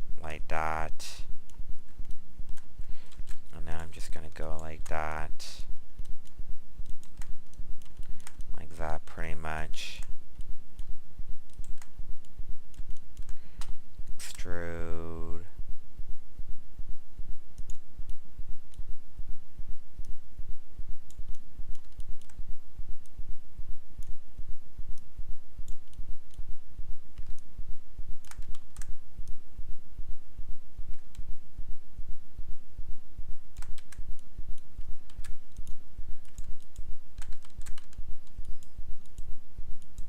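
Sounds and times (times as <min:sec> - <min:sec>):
low pulsing hum: 0:00.0 - 0:40.0
keyboard and mouse clicking: 0:01.5 - 0:03.8, 0:06.0 - 0:08.6, 0:11.5 - 0:14.4, 0:17.6 - 0:18.8, 0:21.1 - 0:22.4, 0:24.9 - 0:26.4, 0:27.2 - 0:27.5, 0:28.2 - 0:29.4, 0:33.6 - 0:40.0.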